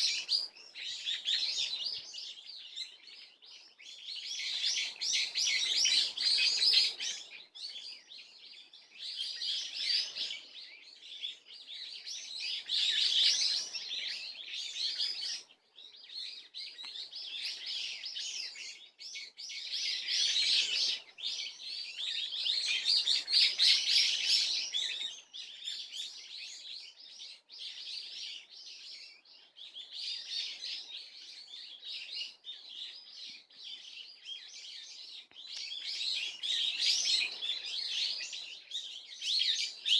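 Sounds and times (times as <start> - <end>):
birds twittering: 0.0 - 39.9.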